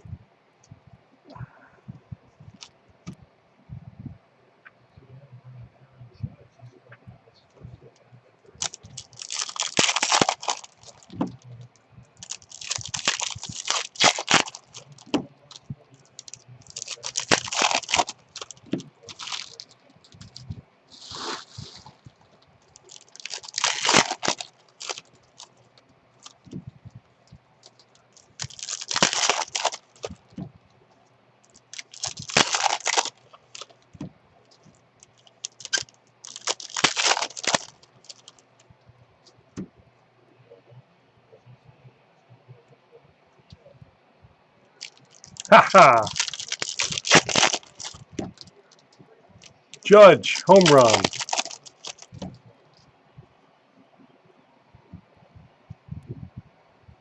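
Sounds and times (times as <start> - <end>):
foil wrappers crinkling and tearing: 8.6 - 11.4, 12.2 - 25.6, 26.2 - 26.6, 27.6 - 30.5, 31.5 - 33.8, 34.6 - 38.4, 44.8 - 48.8, 49.4 - 52.4.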